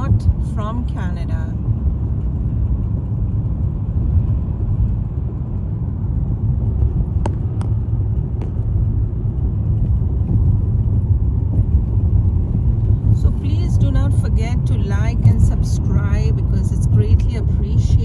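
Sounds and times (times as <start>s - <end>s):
car driving rumble: 0.0s - 18.0s.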